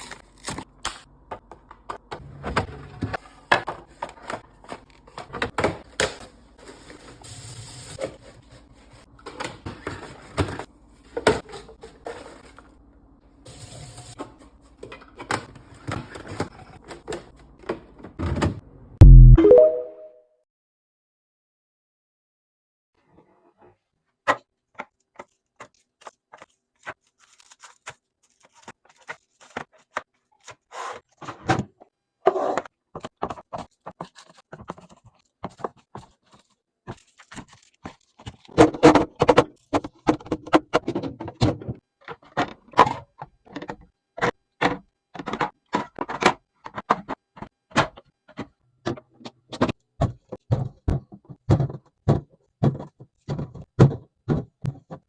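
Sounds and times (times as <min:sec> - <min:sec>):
packaging rustling and scraping: 0:25.1 - 0:31.4, 0:32.3 - 0:40.5
containers clicking and thunking: 0:32.5 - 0:55.0.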